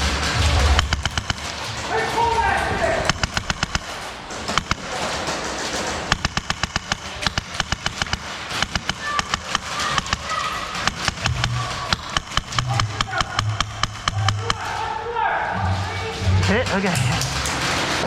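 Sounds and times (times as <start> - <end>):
airsoft guns firing: 0.0 - 15.2, 16.4 - 18.0.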